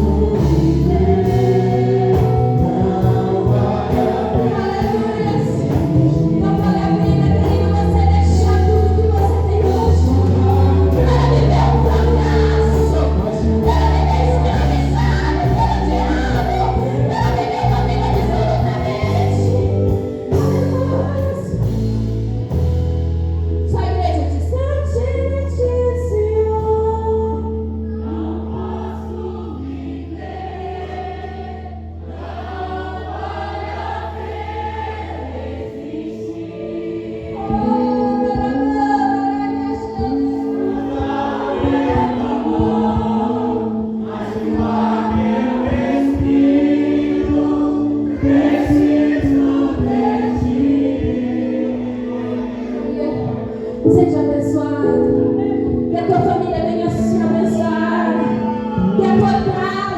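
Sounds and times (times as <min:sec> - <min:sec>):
group singing gospel song: 0:00.0 - 0:22.8, 0:24.9 - 0:59.9
instrumental accompaniment: 0:27.5 - 0:59.9.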